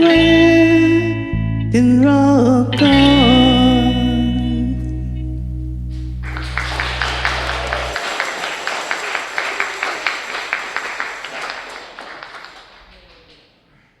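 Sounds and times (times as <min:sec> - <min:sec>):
audience applauding: 0:05.9 - 0:13.6.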